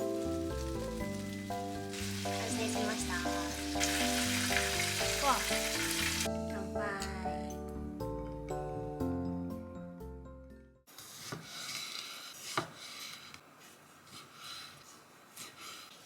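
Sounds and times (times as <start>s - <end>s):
food sizzling in hot oil: 0.0s - 6.3s
background music: 0.0s - 10.8s.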